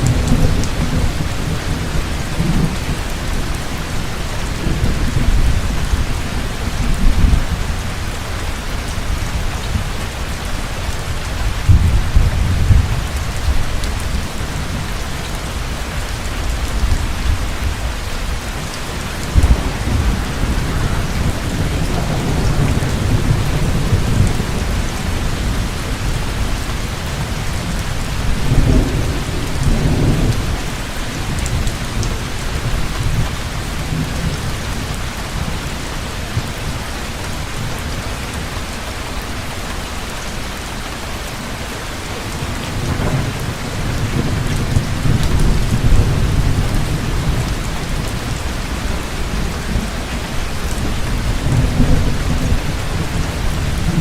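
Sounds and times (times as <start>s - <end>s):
heavy rain pouring: 0.0s - 54.0s
rolling thunder: 11.4s - 15.0s, 16.5s - 34.9s, 42.5s - 54.0s.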